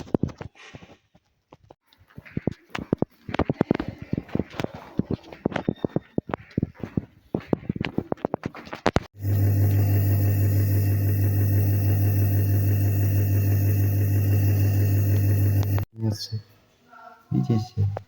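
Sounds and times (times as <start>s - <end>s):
machine hum with deep buzz: 9.2s - 15.9s.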